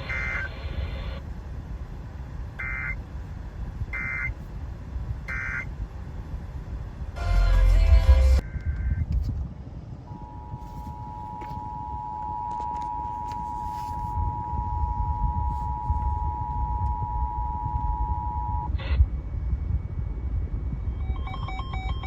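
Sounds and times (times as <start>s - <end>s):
low background rumble: 0.0s - 22.0s
two-tone attention signal: 21.0s - 22.0s.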